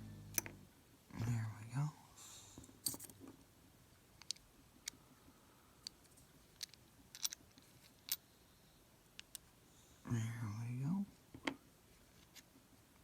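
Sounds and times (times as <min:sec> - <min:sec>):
small metal parts clicking: 0:02.8 - 0:03.2, 0:04.2 - 0:05.0, 0:05.8 - 0:08.2.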